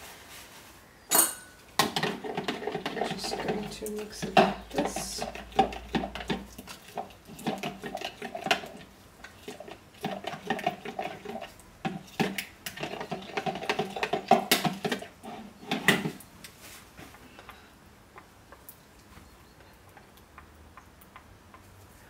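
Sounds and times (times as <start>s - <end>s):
utensil scraping mixing container: 1.8s - 16.2s.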